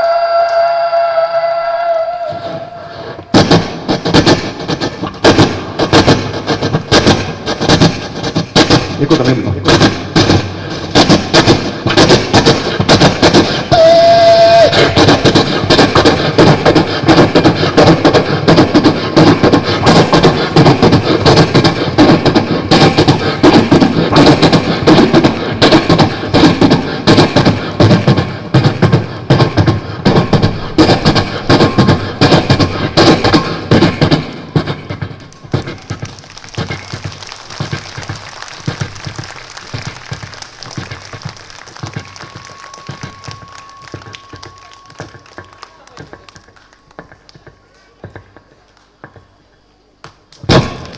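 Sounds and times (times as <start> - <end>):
beatbox mouth percussion: 2.2 - 49.4
whistle-like tone: 13.7 - 15.2, 35.3 - 46.3.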